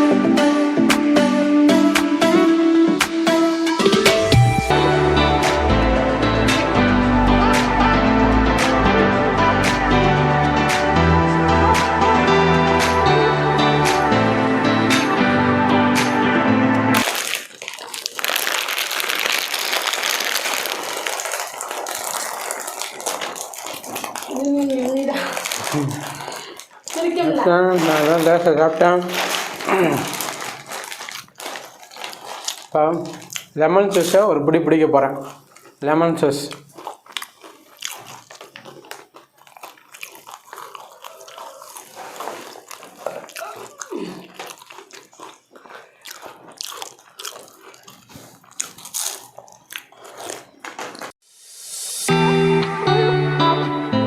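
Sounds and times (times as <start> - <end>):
background music: 0.0 - 17.0, 51.4 - 54.0
potato chips crunching: 17.0 - 34.3, 35.0 - 51.2
snack packet crinkling: 17.0 - 51.2.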